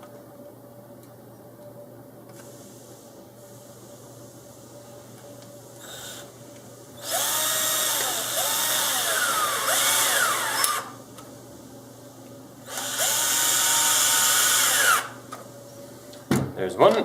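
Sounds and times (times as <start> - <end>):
cordless power driver running: 7.0 - 11.0, 12.6 - 15.3.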